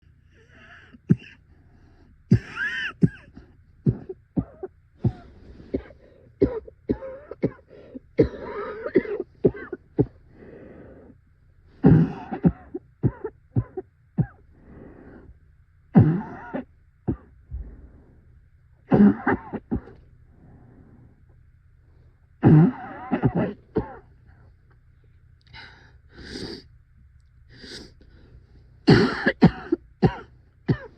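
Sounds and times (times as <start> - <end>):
person coughing violently: 0.6 - 1.4, 2.3 - 10.2, 11.8 - 14.4, 16.0 - 17.3, 18.9 - 20.0, 22.4 - 24.1, 28.9 - 30.9.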